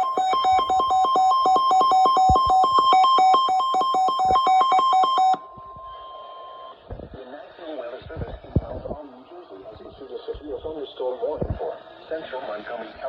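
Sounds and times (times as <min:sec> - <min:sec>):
rapid two-pitch alarm beeping: 0:00.0 - 0:06.8
steady warning alarm tone: 0:00.0 - 0:06.9.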